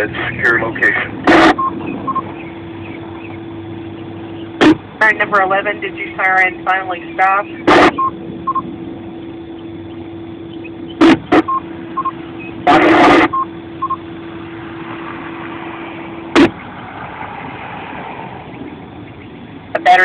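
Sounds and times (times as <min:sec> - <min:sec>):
static bursts: 0:00.0 - 0:14.6, 0:16.2 - 0:16.7
steady low radio hum: 0:00.0 - 0:20.0
short high beeps: 0:01.3 - 0:02.3, 0:07.7 - 0:08.6, 0:11.0 - 0:14.0.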